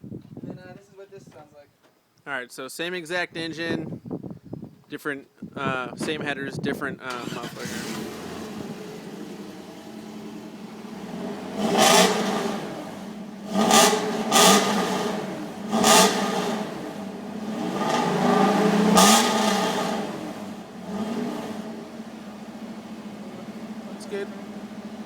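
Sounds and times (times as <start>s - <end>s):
pickup engine idling and revving: 7.1s - 25.0s.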